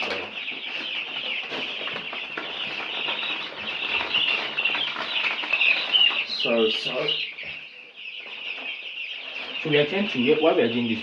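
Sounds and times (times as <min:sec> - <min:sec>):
rustling in litter: 0:00.0 - 0:07.5
chicks peeping: 0:00.0 - 0:11.0.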